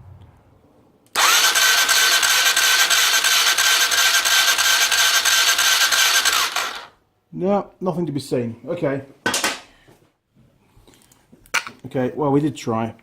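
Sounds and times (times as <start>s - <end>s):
motorcycle engine cranking: 1.1s - 6.9s
starter motor whine: 1.1s - 7.0s.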